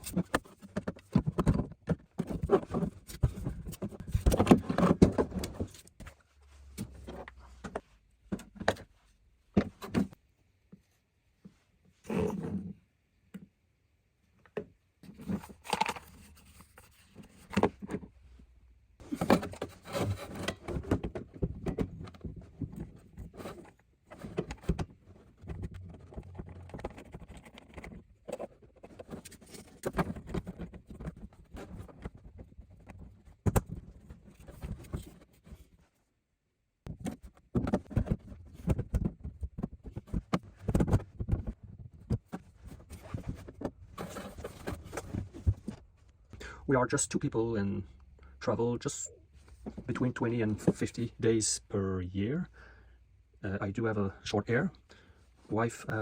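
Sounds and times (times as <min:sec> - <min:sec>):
scraping and knocking of pipe fittings: 0:14.6 - 0:18.2, 0:19.0 - 0:35.8.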